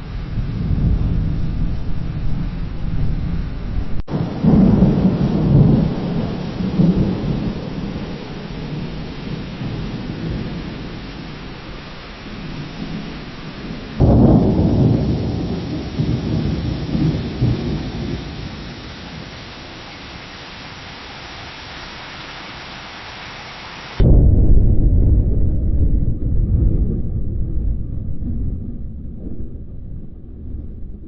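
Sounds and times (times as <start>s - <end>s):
distant thunder rumbling: 0.0s - 22.0s, 24.0s - 31.0s
steady hiss: 0.0s - 24.1s.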